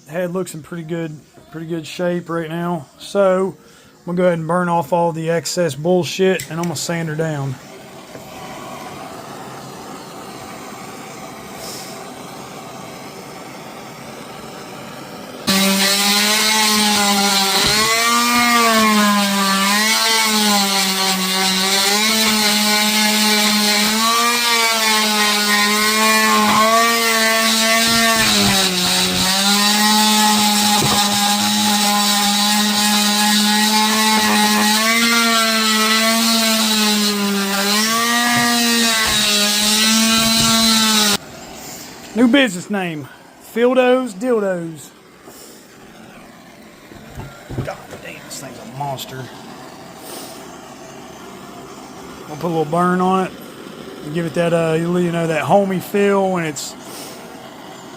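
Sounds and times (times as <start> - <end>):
steady hiss: 5.2 - 15.8, 39.1 - 57.9
electric sander sanding wood: 6.5 - 41.3, 43.6 - 57.7.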